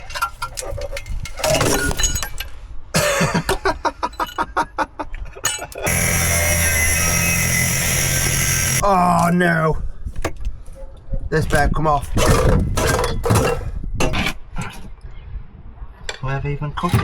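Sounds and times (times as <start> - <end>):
angle grinder cutting metal: 5.8 - 8.8
metal knocks and clanks: 12.2 - 14.4.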